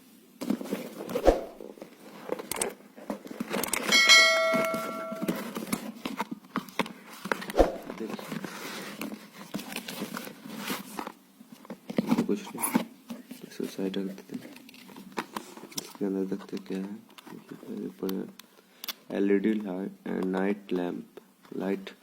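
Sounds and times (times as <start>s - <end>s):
bell-like ringing tone: 3.9s - 5.5s.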